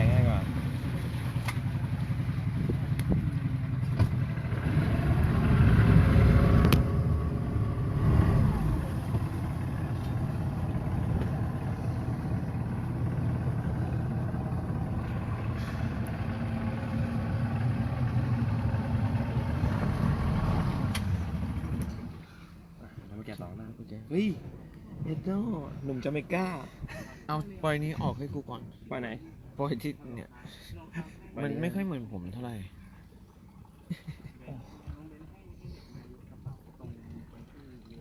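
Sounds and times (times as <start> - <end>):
motorboat engine rumbling: 0.0 - 38.0.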